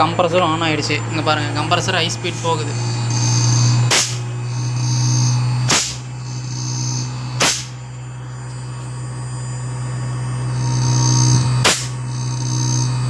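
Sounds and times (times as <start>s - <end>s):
compressor humming: 0.0s - 13.0s
sharp snaps: 3.9s - 4.3s, 5.7s - 6.1s, 7.4s - 7.8s, 11.6s - 12.0s.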